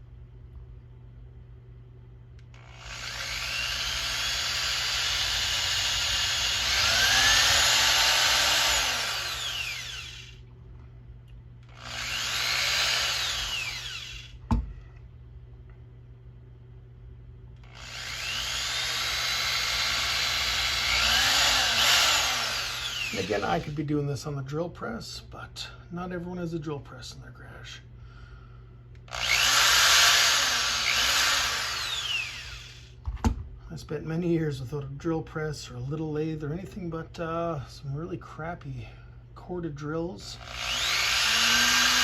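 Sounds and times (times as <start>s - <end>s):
electric drill whining: 2.5s - 10.4s, 11.6s - 14.4s, 17.6s - 23.8s, 29.1s - 33.0s, 40.4s - 42.0s.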